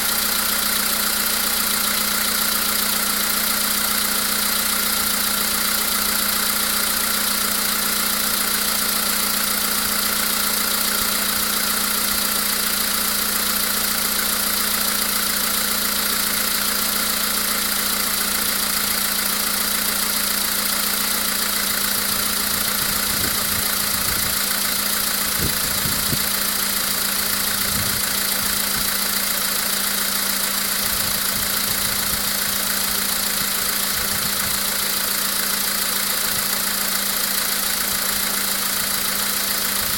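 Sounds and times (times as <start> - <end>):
car engine idling with knocking: 0.0 - 39.9.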